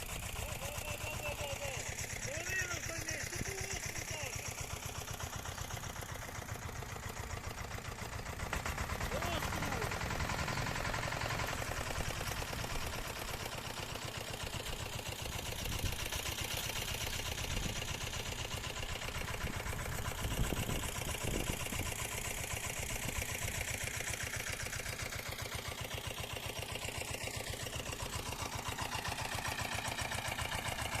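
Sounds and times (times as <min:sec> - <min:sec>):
single-cylinder tractor engine running: 0:00.0 - 0:31.0.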